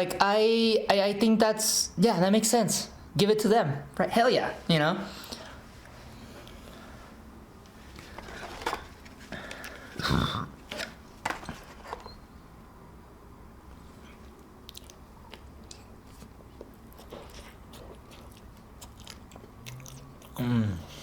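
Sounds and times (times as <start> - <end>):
chewing: 14.0 - 21.0.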